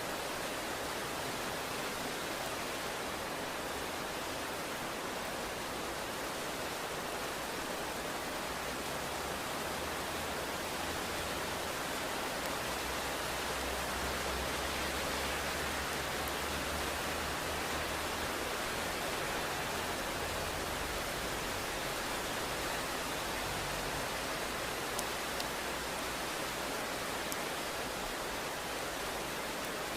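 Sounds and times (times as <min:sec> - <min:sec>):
heavy rain hissing: 0:00.0 - 0:29.9.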